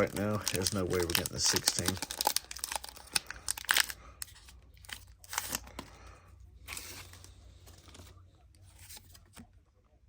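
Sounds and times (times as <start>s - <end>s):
foil pack tearing and crinkling: 0.0s - 4.0s.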